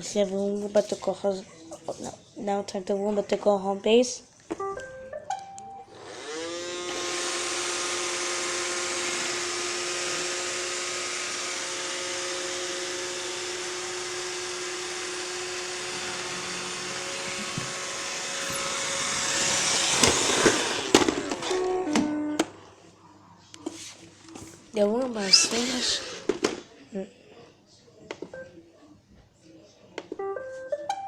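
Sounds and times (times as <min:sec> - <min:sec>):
robot vacuum whirring hum: 0:05.9 - 0:22.6, 0:25.0 - 0:26.6.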